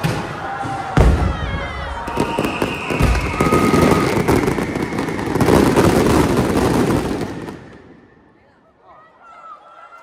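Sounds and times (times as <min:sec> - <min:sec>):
fireworks crackling and banging: 0:00.0 - 0:08.3
high falling whistle: 0:01.3 - 0:08.3.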